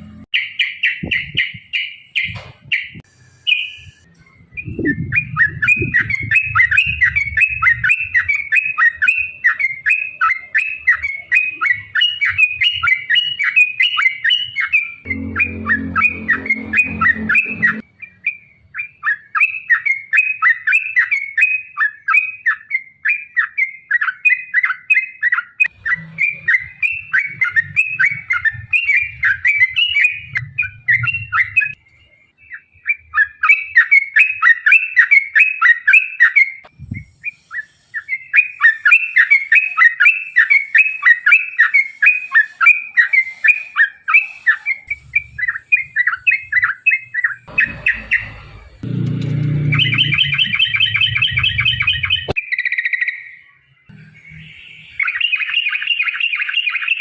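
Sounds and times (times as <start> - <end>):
bird chattering song: 0.3 - 48.4, 49.7 - 53.4, 54.1 - 57.0
low rumble: 15.1 - 17.8.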